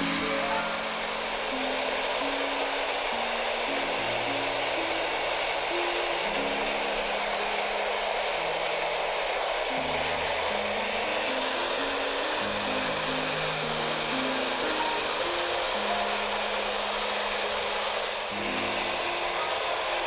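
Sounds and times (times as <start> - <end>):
background music: 0.0 - 2.0, 18.3 - 20.0
hair dryer blowing: 0.0 - 20.0.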